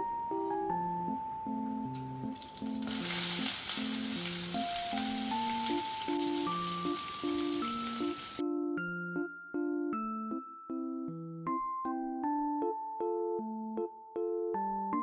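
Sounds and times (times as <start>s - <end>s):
soft piano music: 0.0s - 15.0s
food sizzling in a pan: 2.0s - 8.4s.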